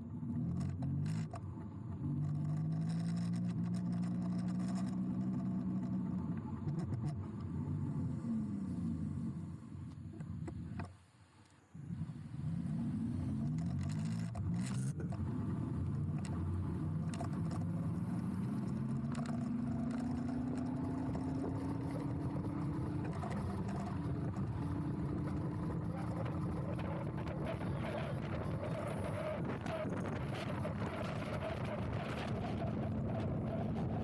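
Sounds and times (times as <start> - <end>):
tyre and wind rumble: 11.8 - 34.0.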